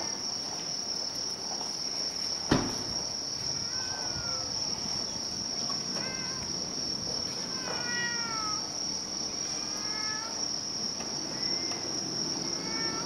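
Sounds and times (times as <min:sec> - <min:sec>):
insects singing: 0:00.0 - 0:13.0
cat mewing faintly: 0:03.5 - 0:04.9, 0:05.9 - 0:06.6, 0:07.3 - 0:08.7, 0:12.5 - 0:13.0.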